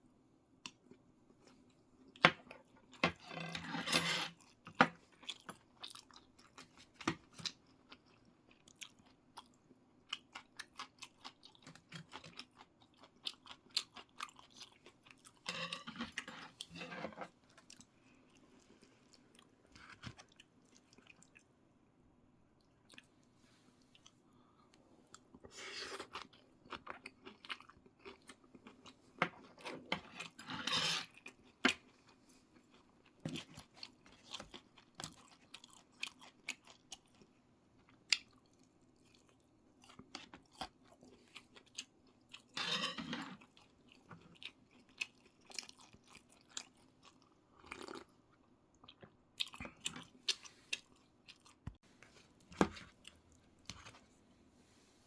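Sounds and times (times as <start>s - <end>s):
person chewing crunchy food: 4.3s - 21.5s, 25.1s - 54.2s.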